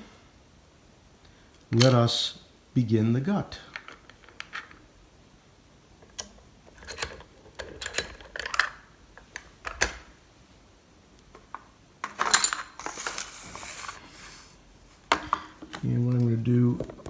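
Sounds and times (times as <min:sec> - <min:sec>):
small tools being handled: 0:03.6 - 0:04.9, 0:06.0 - 0:10.1, 0:11.3 - 0:14.2.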